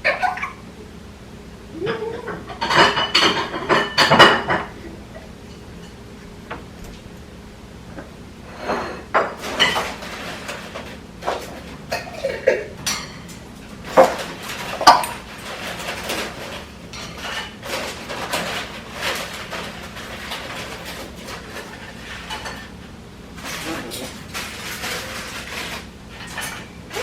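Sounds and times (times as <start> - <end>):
hard toys clattering: 8.7 - 27.0.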